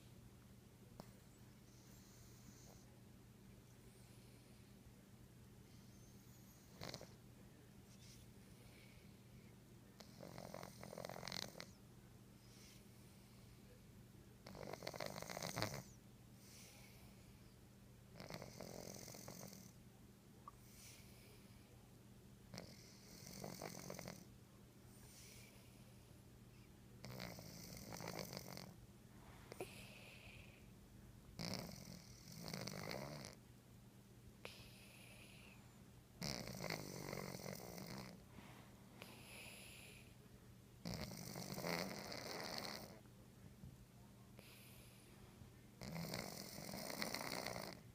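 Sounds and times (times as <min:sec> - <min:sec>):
cat snoring: 0:01.7 - 0:02.9, 0:05.7 - 0:07.2, 0:10.0 - 0:11.8, 0:14.4 - 0:17.2, 0:18.2 - 0:19.8, 0:22.5 - 0:24.3, 0:27.0 - 0:28.8, 0:29.5 - 0:30.6, 0:31.4 - 0:33.4, 0:34.4 - 0:35.6, 0:36.2 - 0:38.2, 0:39.0 - 0:40.1, 0:40.8 - 0:43.0, 0:44.4 - 0:45.0, 0:45.8 - 0:47.9
cat soft breaths: 0:07.8 - 0:09.6, 0:16.4 - 0:17.6, 0:20.5 - 0:21.9, 0:24.8 - 0:26.8, 0:29.1 - 0:30.8, 0:38.2 - 0:40.2, 0:44.4 - 0:45.5.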